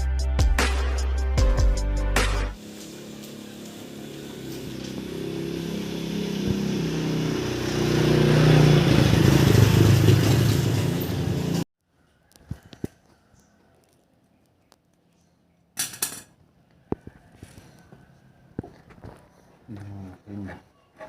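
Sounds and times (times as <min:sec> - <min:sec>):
motorcycle engine revving: 0:02.6 - 0:11.6.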